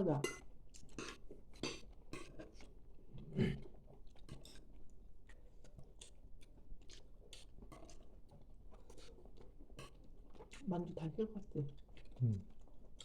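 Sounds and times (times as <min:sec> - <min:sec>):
toddler chewing: 0:05.2 - 0:10.7.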